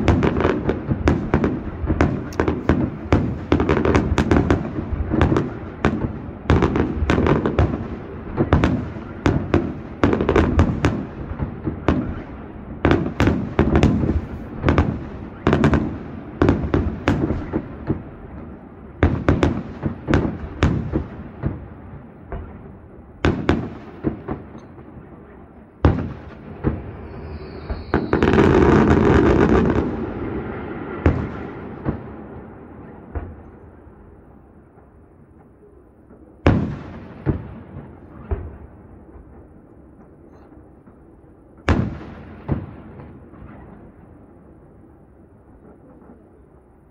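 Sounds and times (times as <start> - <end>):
fireworks bursting: 0.0 - 44.6.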